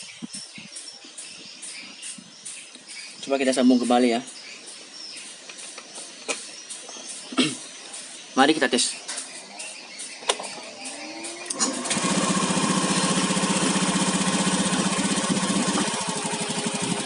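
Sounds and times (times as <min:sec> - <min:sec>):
scooter engine starting and idling: 0:10.3 - 0:17.0.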